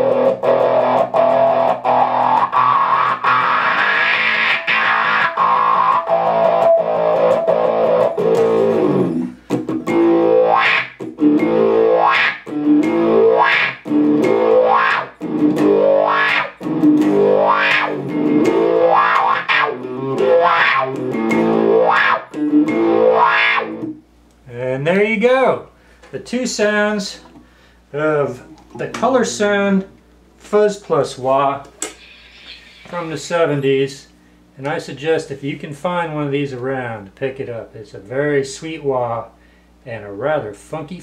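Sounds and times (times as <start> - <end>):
distorted electric guitar with wah: 0.0 - 24.0, 31.8 - 33.2.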